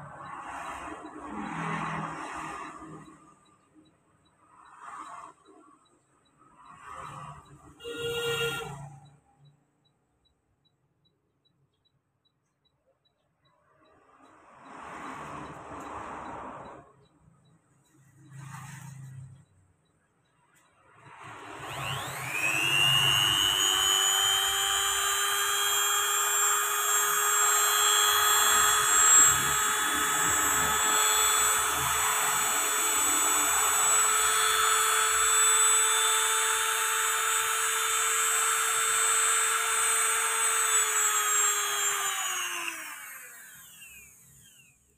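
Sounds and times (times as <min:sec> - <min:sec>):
mini grinder motor whining: 0:21.1 - 0:44.9.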